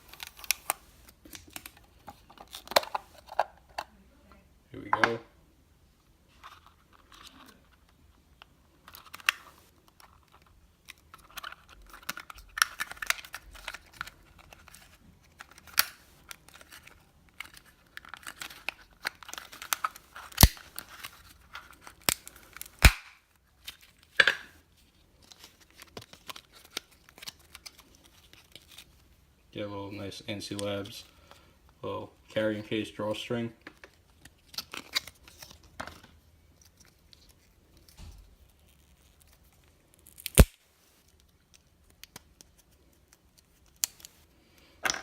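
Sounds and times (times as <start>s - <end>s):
packaging rustling and crinkling: 0.0s - 3.4s, 8.8s - 29.2s.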